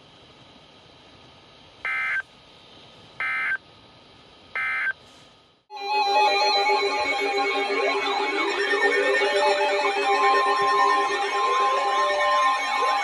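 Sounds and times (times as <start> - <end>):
loud steady electronic tone: 1.8 - 2.3, 3.2 - 3.6, 4.6 - 5.0, 6.2 - 13.0.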